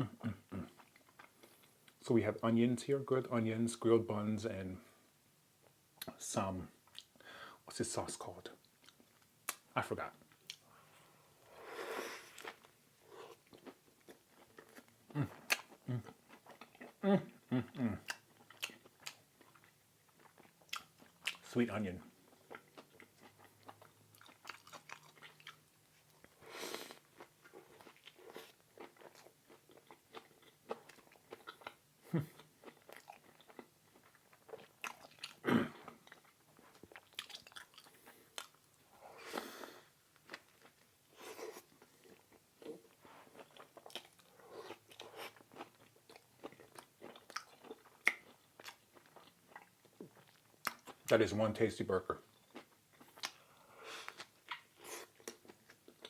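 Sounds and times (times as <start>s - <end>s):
close chewing wet smacks: 22.4s - 25.6s, 28.8s - 38.6s, 43.3s - 51.1s.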